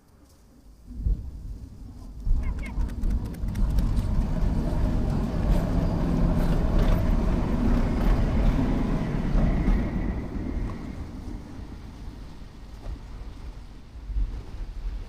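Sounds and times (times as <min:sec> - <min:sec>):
passing motor vehicle rumble: 0:02.1 - 0:13.7.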